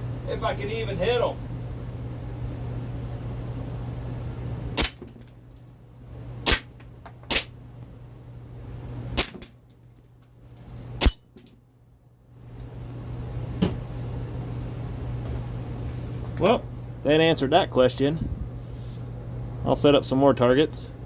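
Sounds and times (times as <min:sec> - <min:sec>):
airsoft pistol shots: 0:04.8 - 0:05.1, 0:06.5 - 0:06.7, 0:07.3 - 0:07.5, 0:09.2 - 0:09.5, 0:11.0 - 0:11.3.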